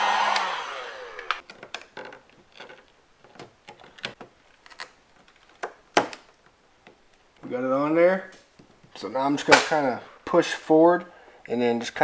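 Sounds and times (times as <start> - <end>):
heat gun fan whining down: 0.0 - 1.4.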